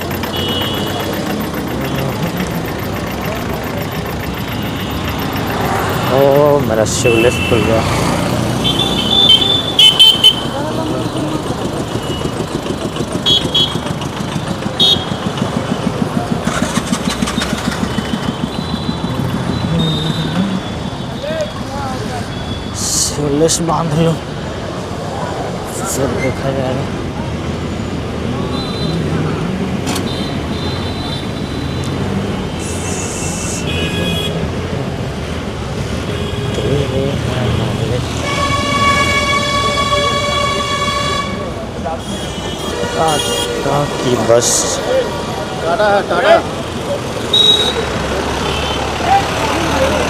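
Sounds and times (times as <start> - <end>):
vehicle engine chugging: 0.0 - 21.8
street traffic: 0.0 - 50.0
vehicle engines rumbling: 0.0 - 50.0
short horn beeps: 47.3 - 47.8.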